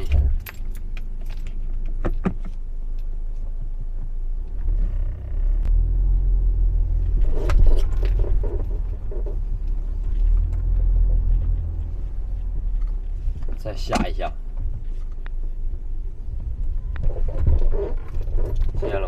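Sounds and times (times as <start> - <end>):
car engine rumble: 0.0 - 19.0
suspension creaking squeaks: 4.5 - 5.7, 7.0 - 13.7, 16.7 - 19.0.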